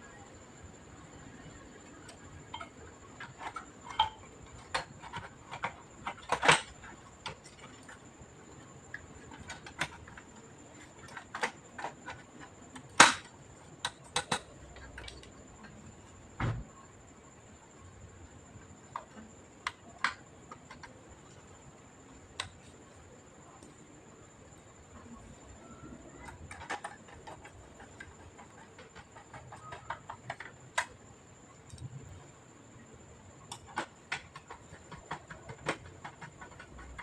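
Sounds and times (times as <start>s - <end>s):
faint high whine: 0.0s - 37.0s
plastic and metal parts clicking: 2.0s - 8.0s, 9.2s - 15.8s, 26.1s - 31.0s, 33.5s - 37.0s
dull thump: 16.4s - 16.7s.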